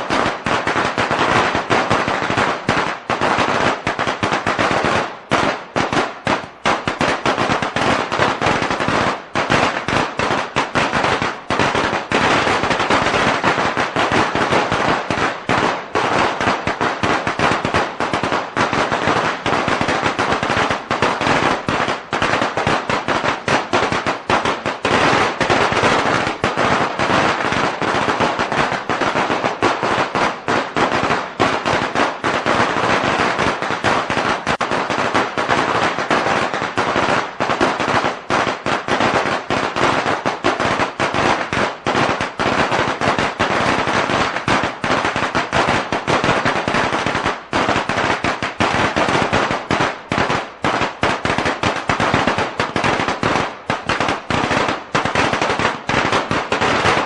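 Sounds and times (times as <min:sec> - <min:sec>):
firecrackers crackling: 0:00.0 - 0:57.0.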